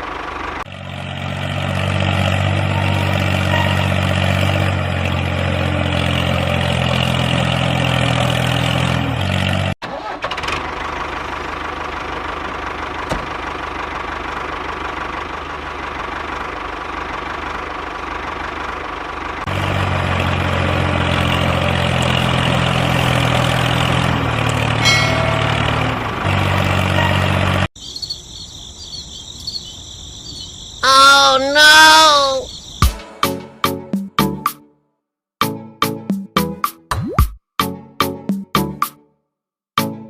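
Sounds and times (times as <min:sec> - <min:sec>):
engine running: 0:00.0 - 0:27.8
insects chirping: 0:27.3 - 0:33.0.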